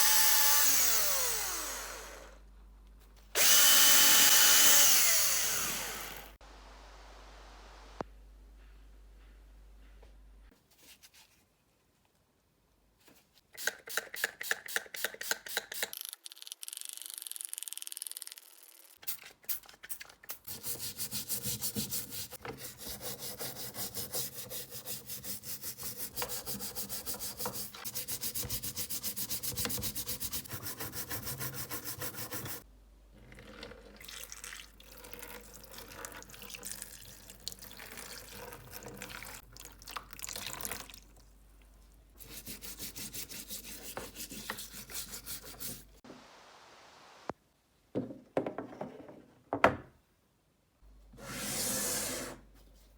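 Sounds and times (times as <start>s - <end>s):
rubbing strokes on a hard surface: 20.5s - 32.6s, 42.2s - 46.0s.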